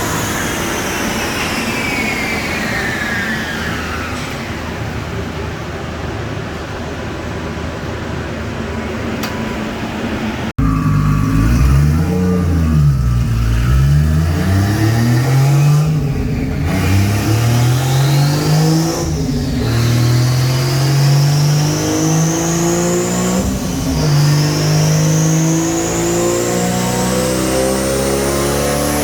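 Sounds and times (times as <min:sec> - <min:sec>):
engine revving hard: 0:10.6 - 0:29.0.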